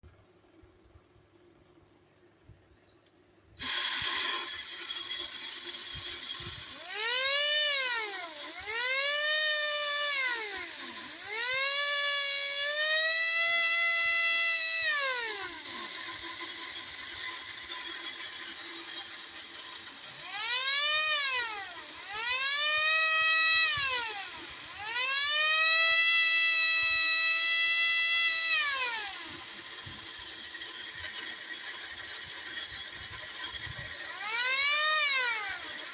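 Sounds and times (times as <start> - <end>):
toy motor and gears whirring: 3.6 - 35.9
toy siren wailing: 20.2 - 29.3, 34.2 - 35.8.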